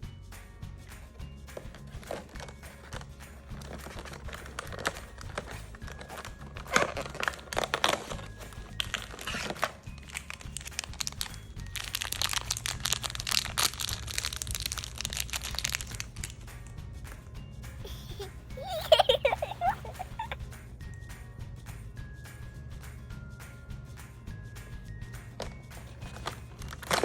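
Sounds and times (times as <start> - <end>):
soft background music: 0.0 - 27.0
plastic packaging crinkling: 1.6 - 16.5, 17.9 - 20.4, 25.4 - 27.0.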